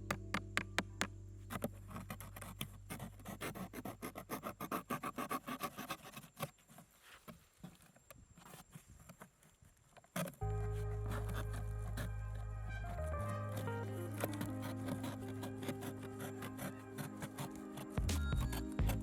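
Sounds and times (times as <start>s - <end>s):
light scratching strokes: 1.5s - 19.0s.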